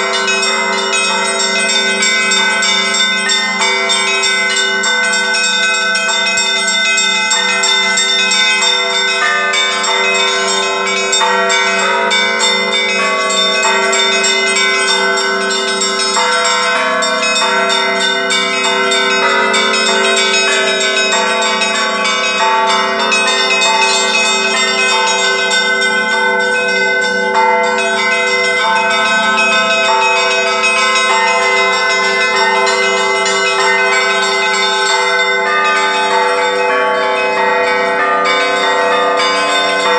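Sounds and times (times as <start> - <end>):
large bells ringing: 0.0 - 39.9
small church bells struck quickly: 0.0 - 39.9.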